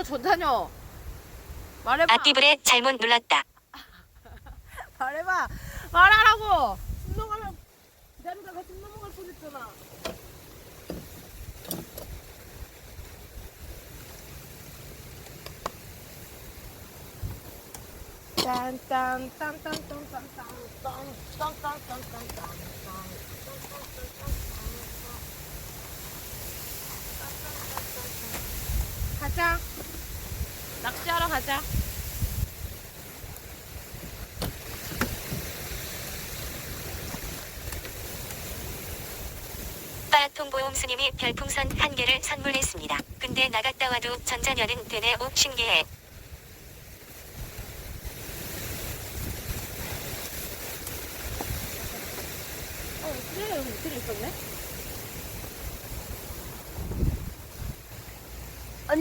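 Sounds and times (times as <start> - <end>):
wind buffeting microphone: 4.3 - 45.2, 45.8 - 59.0.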